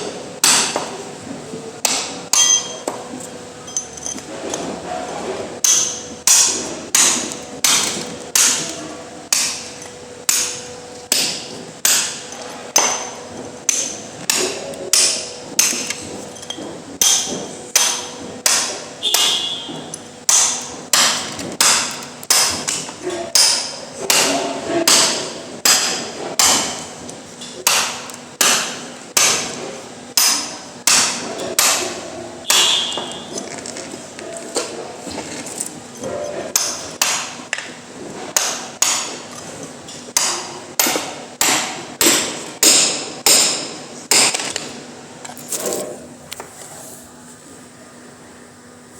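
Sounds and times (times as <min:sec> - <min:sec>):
hammer blows ringing: 0:05.6 - 0:22.7, 0:30.2 - 0:33.5.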